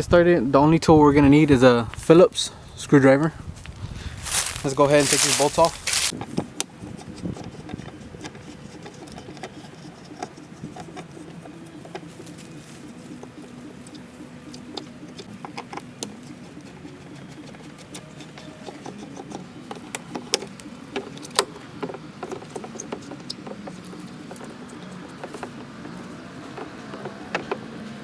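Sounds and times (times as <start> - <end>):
metal scraping on plastic: 4.3 - 28.0.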